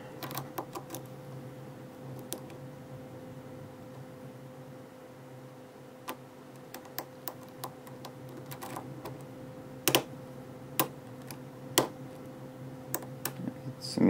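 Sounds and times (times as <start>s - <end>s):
lock picking clicks and crunches: 6.1s - 9.2s.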